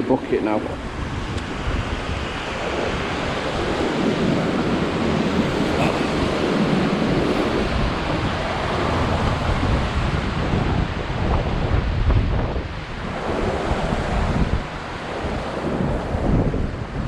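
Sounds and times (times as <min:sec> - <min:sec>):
wind buffeting microphone: 0:00.0 - 0:17.0
water rushing: 0:00.4 - 0:10.5.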